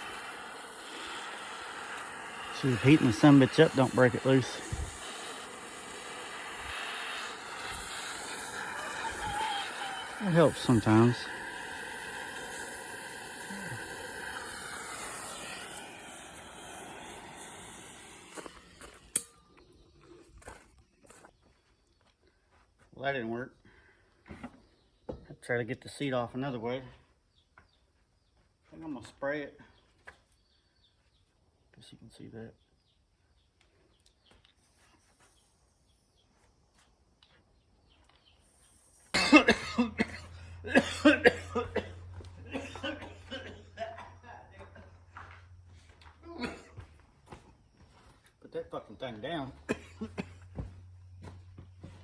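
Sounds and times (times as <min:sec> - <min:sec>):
gas torch flame hissing: 0:00.0 - 0:19.6
man coughing hard: 0:39.2 - 0:44.1, 0:46.3 - 0:46.9, 0:49.7 - 0:50.4.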